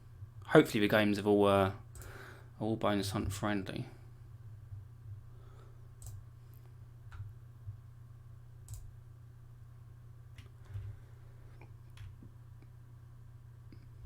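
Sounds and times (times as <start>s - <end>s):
low steady hum: 0.0s - 14.0s
faint sharp clicks: 6.0s - 6.2s.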